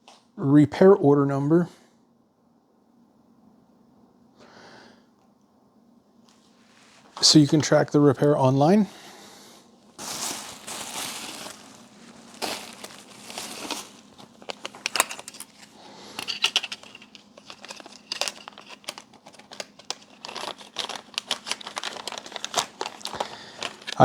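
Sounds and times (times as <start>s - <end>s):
plastic packaging crinkling: 10.0s - 24.0s.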